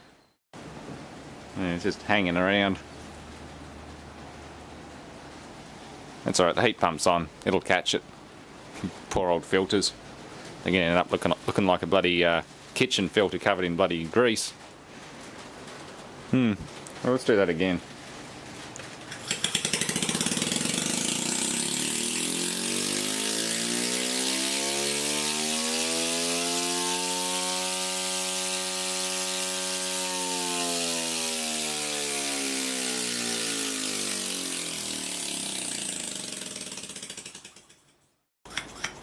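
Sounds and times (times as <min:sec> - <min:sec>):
compressor rattling: 0:19.0 - 0:37.9
motor hum: 0:19.2 - 0:37.7.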